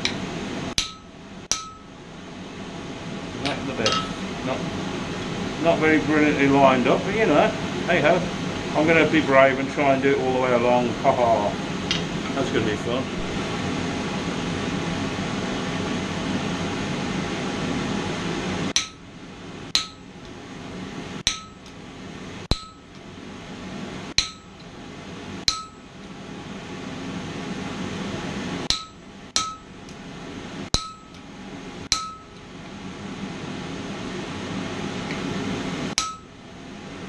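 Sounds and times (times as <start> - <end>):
hammer striking metal on anvil: 0.8 - 1.9, 3.8 - 4.2, 18.8 - 19.0, 19.7 - 20.1, 21.2 - 21.7, 22.5 - 23.0, 24.2 - 24.6, 25.5 - 25.9, 28.7 - 29.7, 30.7 - 31.2, 31.9 - 32.4, 36.0 - 36.3.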